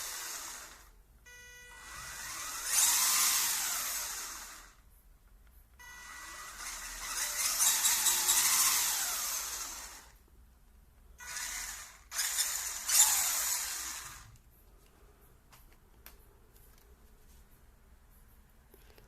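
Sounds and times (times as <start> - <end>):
toy car electric motor whining: 0.0 - 0.9, 1.8 - 4.8, 5.8 - 10.2, 11.2 - 14.3.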